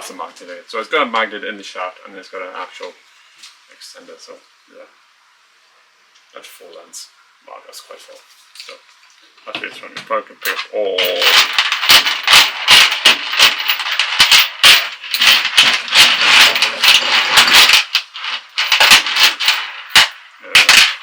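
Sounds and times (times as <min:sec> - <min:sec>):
small metal parts rattling: 0:10.4 - 0:21.0.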